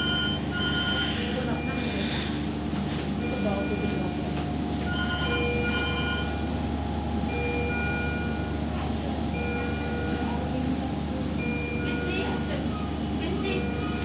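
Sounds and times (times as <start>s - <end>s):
electronic alarm beeps: 0.0s - 2.0s, 4.9s - 6.4s
low machine hum: 0.0s - 14.0s.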